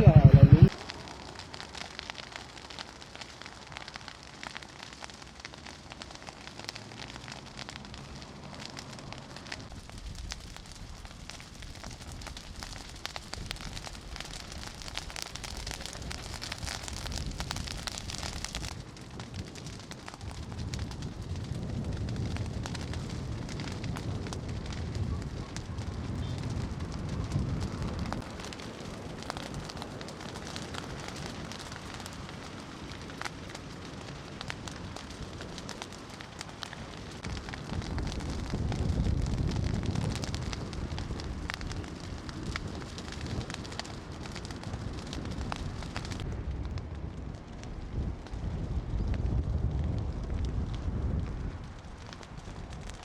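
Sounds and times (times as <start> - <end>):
low rumble: 0.0 - 0.7
fire crackling: 0.0 - 53.0.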